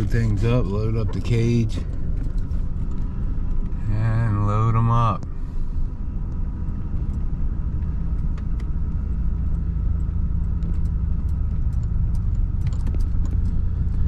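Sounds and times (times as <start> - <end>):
light clicks and rattles: 0.0 - 3.8, 7.0 - 14.0
vehicle engine and road rumble: 0.0 - 14.0.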